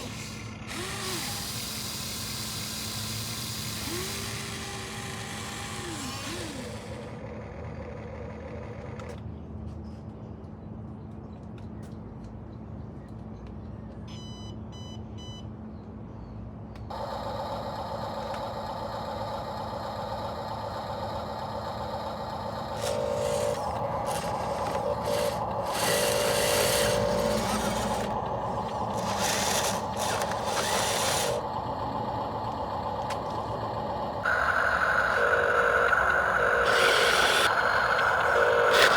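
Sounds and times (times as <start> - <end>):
toy vehicle electric motors whirring: 0.0 - 9.2, 16.9 - 38.9
short beeps: 14.1 - 15.4.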